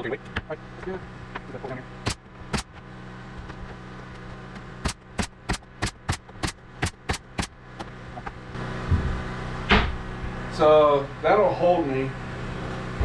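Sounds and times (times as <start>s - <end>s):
steady hum: 0.0s - 13.0s
pneumatic nail gun firing: 2.0s - 2.8s, 4.8s - 7.6s.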